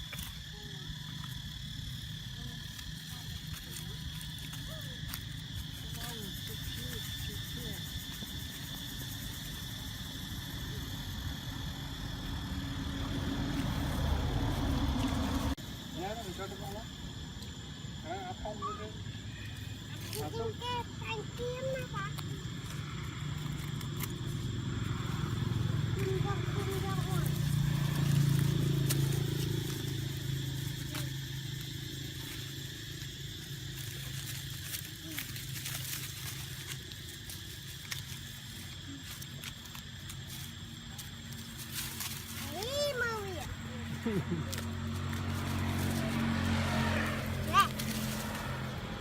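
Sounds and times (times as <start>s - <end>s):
motor engine running: 21.8s - 37.0s, 40.3s - 49.0s.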